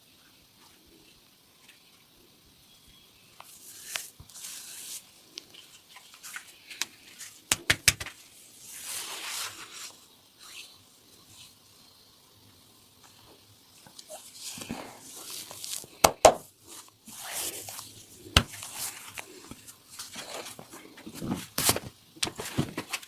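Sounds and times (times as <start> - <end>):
hands rubbing skin and hair: 3.4 - 10.7, 13.9 - 23.0.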